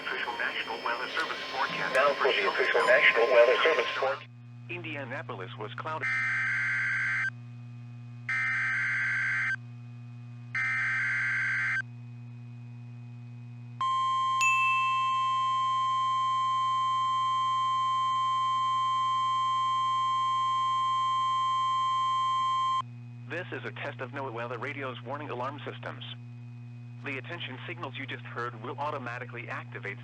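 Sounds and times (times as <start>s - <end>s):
digital data bursts: 0.0s - 4.2s
steady warning alarm tone: 0.0s - 4.2s.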